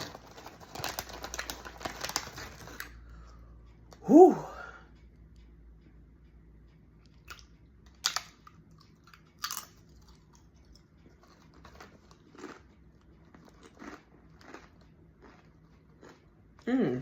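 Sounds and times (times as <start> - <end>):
crunching crisp chips: 0.0 - 3.0, 7.3 - 16.3
soft chewing: 7.0 - 16.7.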